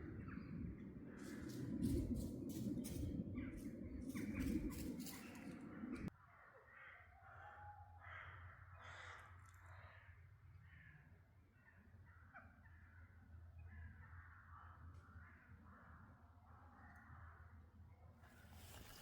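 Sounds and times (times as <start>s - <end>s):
low steady hum: 0.0s - 6.1s
crows cawing: 8.0s - 9.9s.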